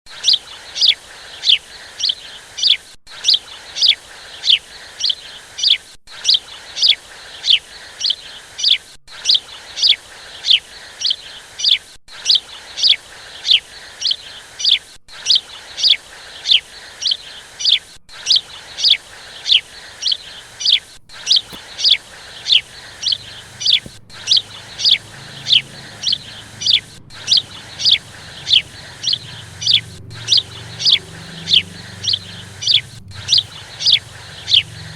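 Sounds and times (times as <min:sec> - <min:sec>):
bird chirping: 0:12.7 - 0:34.9.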